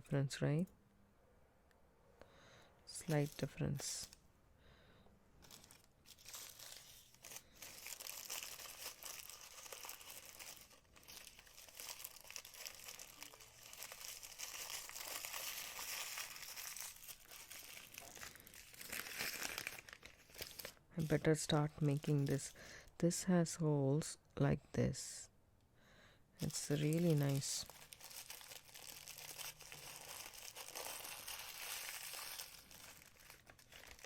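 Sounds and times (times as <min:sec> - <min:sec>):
packaging wrap crinkling: 0:03.0 - 0:04.2, 0:05.4 - 0:22.6, 0:26.4 - 0:34.0.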